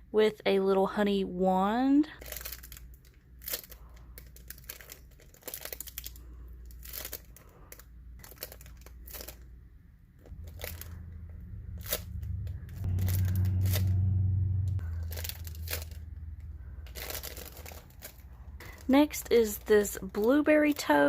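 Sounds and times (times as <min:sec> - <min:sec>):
squishy toy crinkly squishing: 0:02.2 - 0:13.9, 0:14.8 - 0:21.0
low hum: 0:05.9 - 0:20.4.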